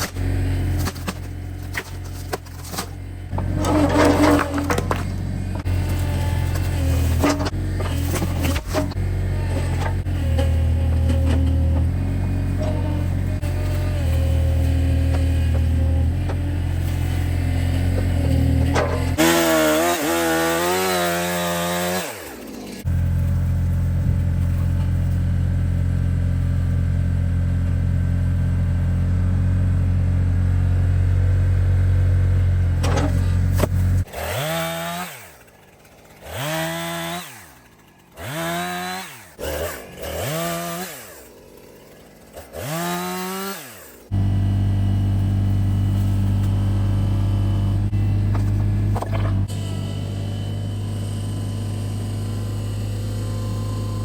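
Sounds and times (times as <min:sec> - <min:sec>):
chainsaw engine idling hum: 0:00.0 - 0:54.0
chainsaw revving: 0:11.9 - 0:22.9, 0:34.0 - 0:54.0.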